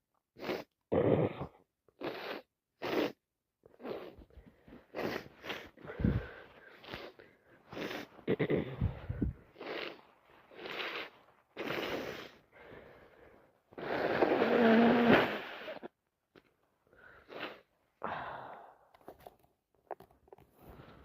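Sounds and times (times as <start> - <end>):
loud nose blow: 0.4 - 4.3, 4.9 - 15.9, 17.0 - 17.7
congested breathing and sniffles: 3.7 - 14.3.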